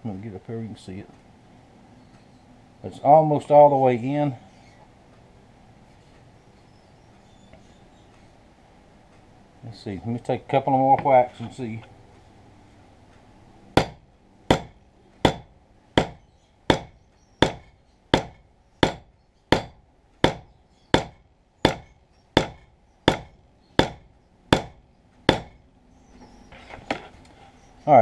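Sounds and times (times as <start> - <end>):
hammer striking wedge: 13.8 - 25.6.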